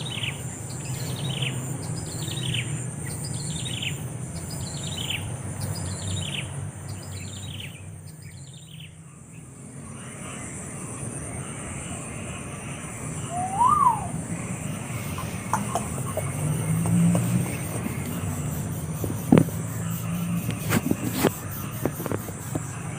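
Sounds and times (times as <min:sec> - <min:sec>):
bird chirping: 0:00.0 - 0:10.4, 0:11.4 - 0:22.8
bird call rising and falling: 0:13.2 - 0:14.3.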